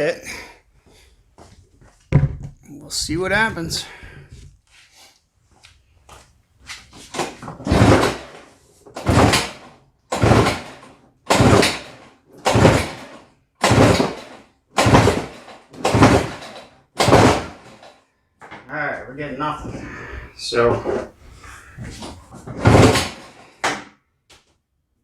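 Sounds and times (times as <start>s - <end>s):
engine turning over: 7.1s - 8.4s, 9.0s - 17.9s, 22.5s - 23.4s
recoil starter cord pulled: 9.0s - 17.9s.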